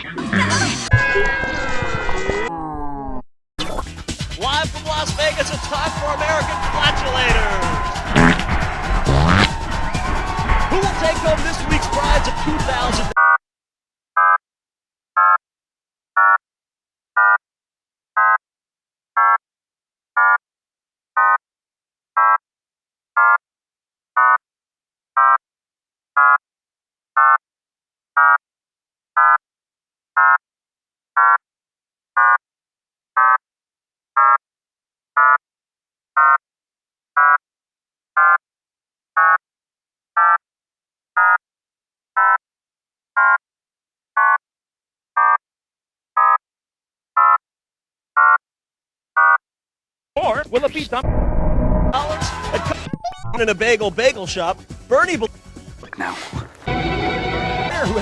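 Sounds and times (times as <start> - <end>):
buzzing electronic beeps: 3.6 - 4.0, 9.1 - 9.5.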